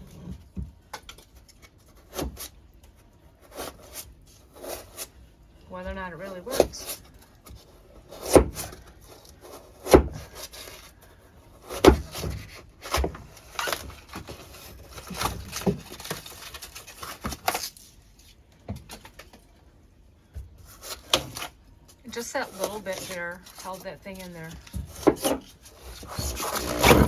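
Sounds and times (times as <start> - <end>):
pry bar scraping foam: 3.3 - 5.2, 20.7 - 27.0.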